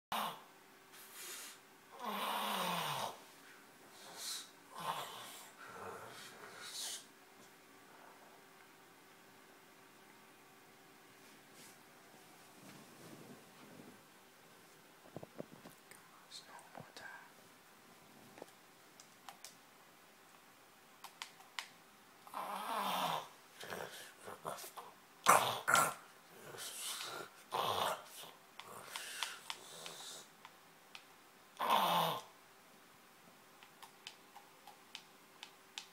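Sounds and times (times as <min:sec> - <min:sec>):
person snoring: 0:01.2 - 0:03.2, 0:04.0 - 0:07.1, 0:22.3 - 0:24.7, 0:25.3 - 0:30.3, 0:31.6 - 0:32.3
hissing breaths: 0:28.2 - 0:30.4.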